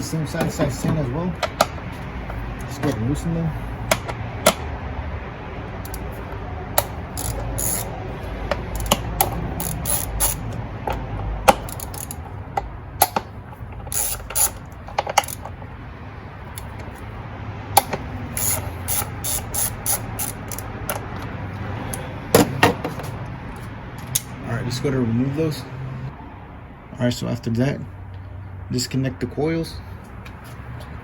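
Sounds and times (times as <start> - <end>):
hand ratchet clicking: 3.8 - 4.6, 5.8 - 6.2, 6.8 - 15.6, 17.8 - 21.2.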